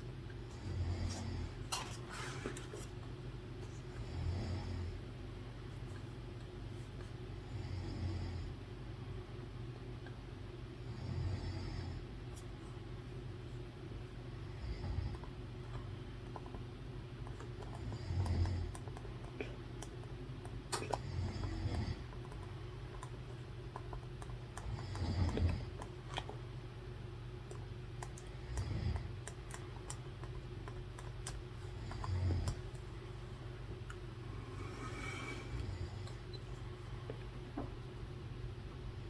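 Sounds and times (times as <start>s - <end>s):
person snoring: 20.9s - 22.1s, 24.6s - 25.7s, 28.3s - 29.1s, 31.8s - 32.6s, 34.3s - 36.1s.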